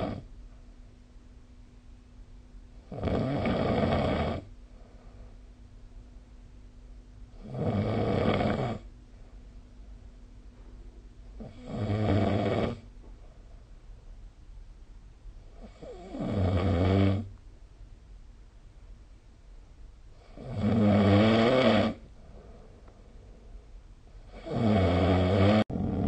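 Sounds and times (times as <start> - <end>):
person snoring: 2.9 - 4.5, 7.4 - 8.9, 11.4 - 12.9, 15.6 - 17.3, 20.2 - 22.0, 24.3 - 26.0.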